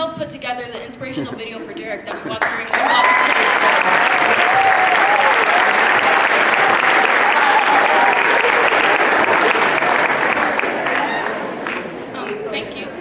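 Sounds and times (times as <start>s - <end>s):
large audience clapping: 2.1s - 12.5s.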